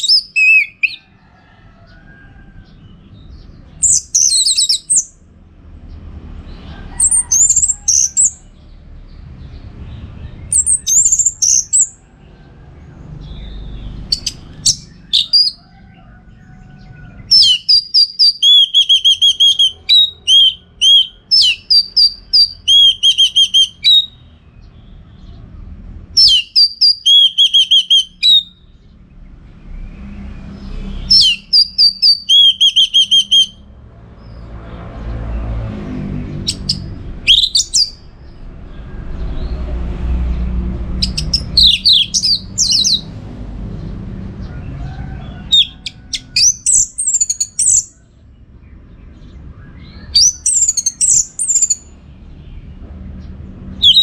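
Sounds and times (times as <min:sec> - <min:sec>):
thrush singing whistled phrases: 0:00.0 - 0:01.0, 0:03.8 - 0:05.2, 0:14.1 - 0:15.6, 0:17.3 - 0:24.2, 0:26.2 - 0:28.6, 0:31.1 - 0:33.6, 0:36.5 - 0:38.0, 0:41.0 - 0:43.1, 0:45.5 - 0:45.8, 0:50.1 - 0:51.9.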